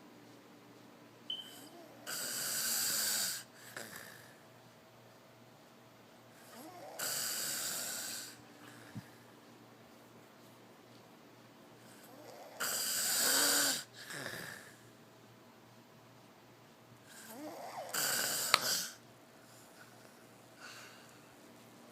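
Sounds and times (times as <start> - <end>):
person snoring: 1.8 - 4.3, 6.5 - 8.4, 12.1 - 14.8, 17.1 - 19.0.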